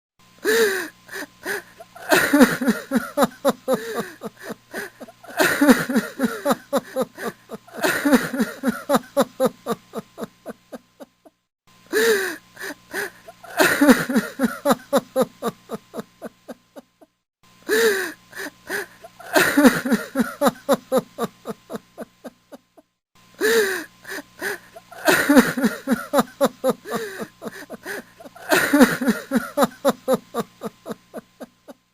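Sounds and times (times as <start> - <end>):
man wailing and sobbing: 0.4 - 10.7, 18.7 - 21.8, 24.4 - 31.6.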